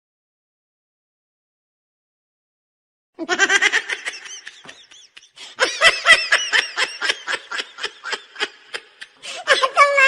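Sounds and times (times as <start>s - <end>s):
high-pitched human laughter: 3.2s - 10.0s.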